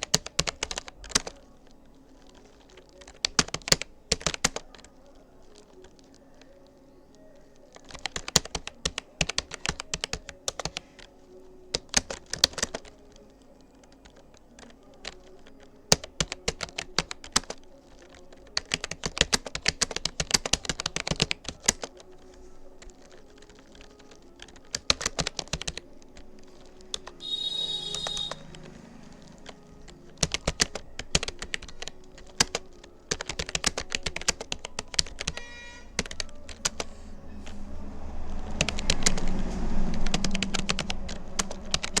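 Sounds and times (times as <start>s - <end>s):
fast typing on keyboard: 0.0s - 42.0s
brief high-pitched tone: 27.2s - 29.4s.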